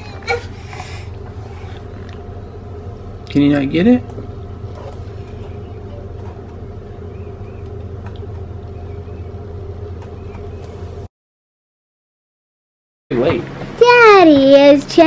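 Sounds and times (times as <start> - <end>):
faint hum: 0.0 - 11.1
low mechanical rumble: 0.0 - 11.1, 13.1 - 15.0.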